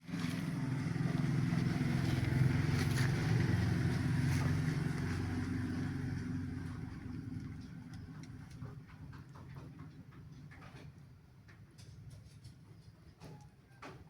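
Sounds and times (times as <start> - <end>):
engine running with pulsing hum: 0.0 - 11.0.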